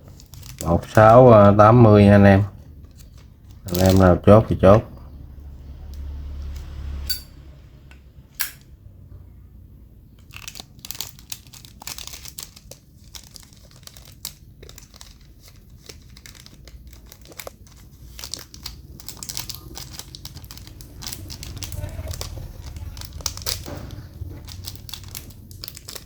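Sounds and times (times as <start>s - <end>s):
plastic wrapping crinkling: 0.0s - 4.7s, 10.2s - 26.0s
metal lighter clicks: 8.4s - 8.6s.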